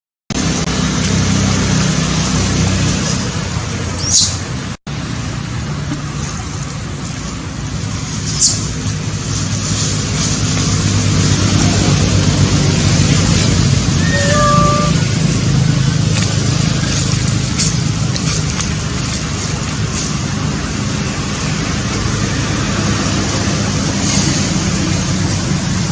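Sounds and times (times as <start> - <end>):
high squeak: 14.0 - 15.0.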